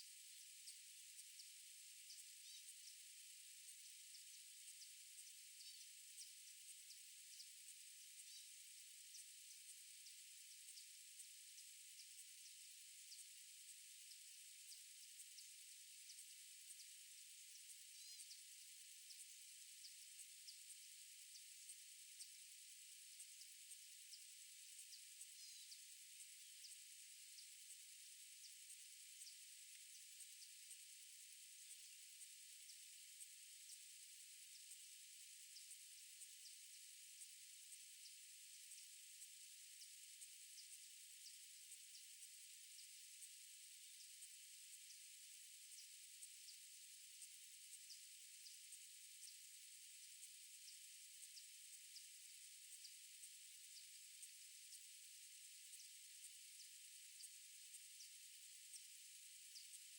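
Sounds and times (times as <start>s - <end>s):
faint high hiss: 0.0s - 6.3s
faint high-pitched chirps: 0.0s - 59.9s
steady high hiss: 14.1s - 59.9s.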